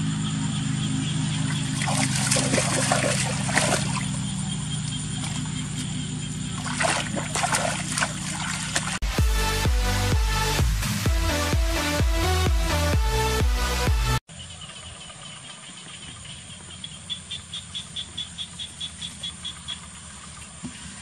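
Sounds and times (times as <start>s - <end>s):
steady low hum: 0.0s - 9.0s
water splashing and sloshing: 1.0s - 9.2s, 14.6s - 21.0s
electronic dance music: 9.0s - 14.2s.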